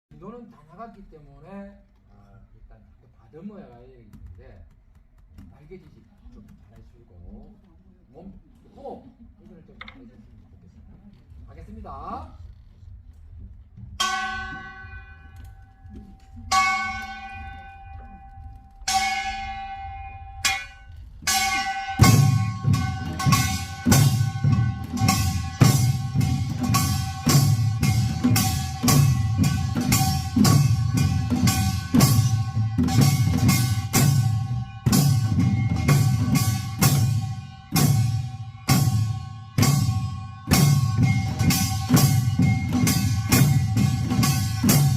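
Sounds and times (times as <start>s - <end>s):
metal gong ringing: 14.0s - 44.9s
barrel drums playing fast rhythm: 21.2s - 44.9s.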